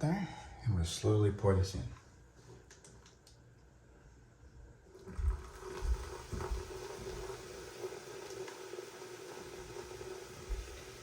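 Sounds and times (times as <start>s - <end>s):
liquid fizzing and hissing: 5.0s - 11.0s.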